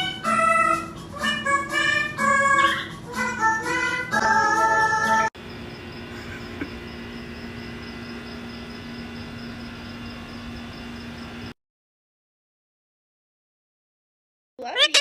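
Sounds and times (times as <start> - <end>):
low hum and hiss: 0.0 - 11.5.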